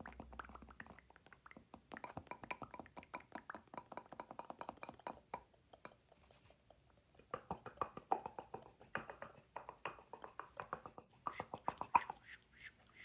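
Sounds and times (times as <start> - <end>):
mouth sounds: 5.3 - 13.0.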